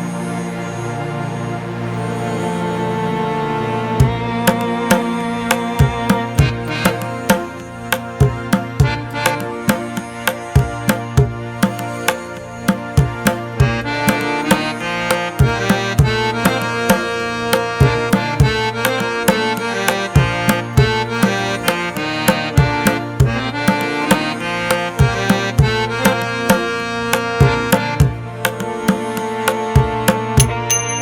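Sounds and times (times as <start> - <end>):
sustained melodic instrument: 0.0 - 31.0
hand drum beat: 4.0 - 14.6, 15.4 - 24.2, 25.0 - 29.2, 29.8 - 30.8.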